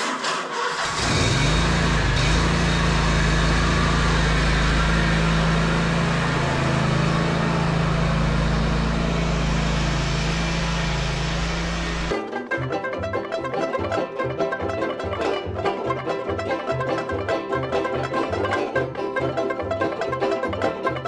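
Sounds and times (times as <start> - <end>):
riding mower engine running: 0.0 - 12.2.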